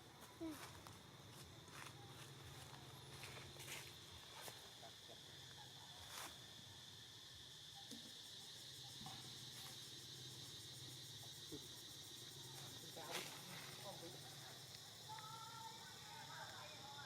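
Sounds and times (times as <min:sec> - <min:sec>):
insects trilling: 0:00.0 - 0:17.0.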